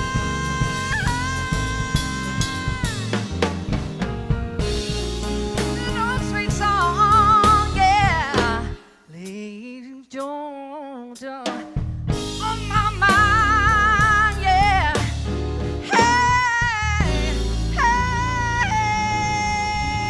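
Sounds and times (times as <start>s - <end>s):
live band playing: 0.0s - 8.8s, 11.5s - 20.0s
person singing long notes: 15.9s - 20.0s.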